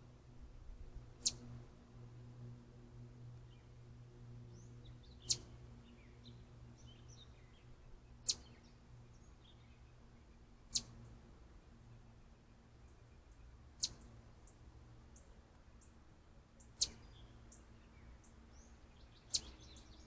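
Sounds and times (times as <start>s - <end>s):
low electrical hum: 0.0s - 20.0s
soft bird twitters: 1.2s - 1.5s, 5.0s - 5.5s, 8.2s - 9.9s, 10.7s - 11.1s, 12.9s - 16.0s, 16.6s - 20.0s
birds chirping: 4.6s - 11.1s, 11.8s - 16.0s, 16.6s - 20.0s.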